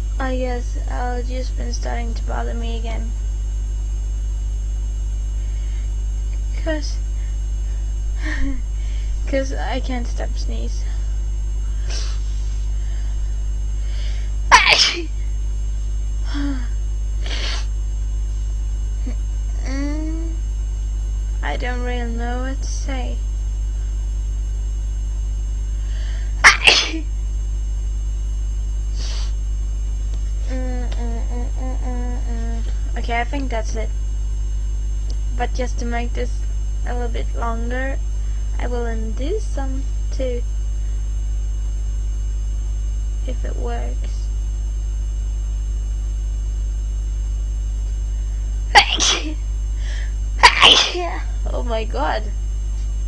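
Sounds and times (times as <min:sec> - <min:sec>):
steady low hum: 0:00.0 - 0:53.0
faint breath: 0:05.4 - 0:06.0, 0:49.8 - 0:50.2
person sneezing: 0:11.8 - 0:12.7, 0:14.0 - 0:15.2, 0:16.4 - 0:17.7, 0:26.4 - 0:27.1, 0:29.0 - 0:29.4, 0:48.8 - 0:51.2.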